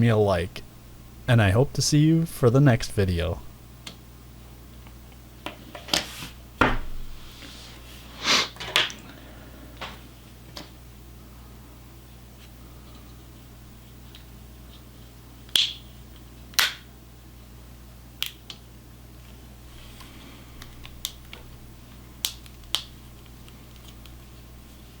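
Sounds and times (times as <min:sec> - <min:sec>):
faint low hum: 0:00.0 - 0:05.7.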